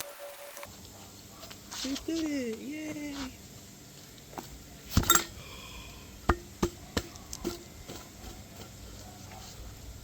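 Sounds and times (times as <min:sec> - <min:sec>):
metal tools knocking and clanking: 0:05.0 - 0:05.4.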